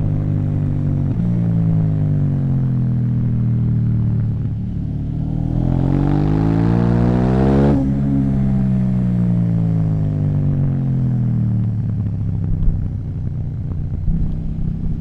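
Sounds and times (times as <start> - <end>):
motorcycle engine revving: 0.0 - 10.6, 11.2 - 15.0.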